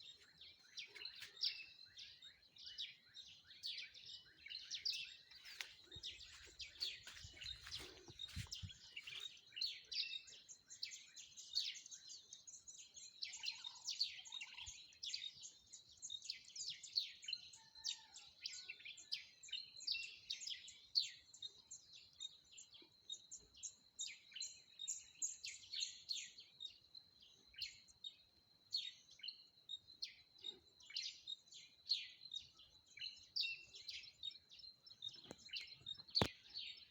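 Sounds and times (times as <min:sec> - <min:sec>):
small birds chirping: 0:00.0 - 0:36.9.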